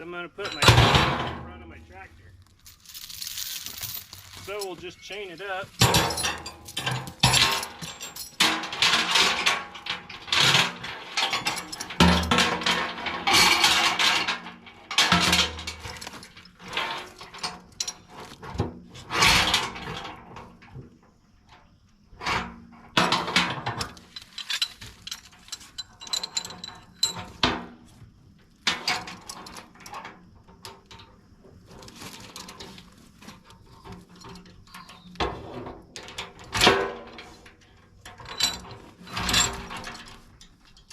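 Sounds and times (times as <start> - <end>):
metal chain rattling: 0.4 - 1.7, 2.5 - 18.4, 23.0 - 27.6, 36.0 - 40.9.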